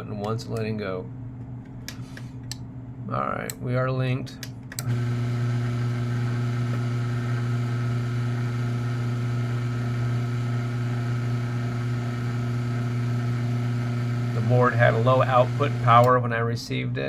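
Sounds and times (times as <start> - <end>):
garage door motor humming: 4.4 - 16.2.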